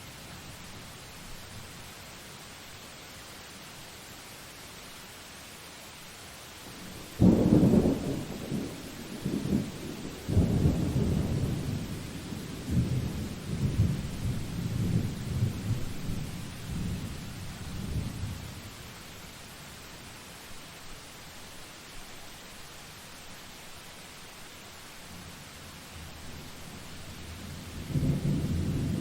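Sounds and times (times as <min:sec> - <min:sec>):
steady rain hiss: 0:00.0 - 0:29.0
thunder clap and rumbling: 0:07.2 - 0:15.9, 0:27.7 - 0:29.0.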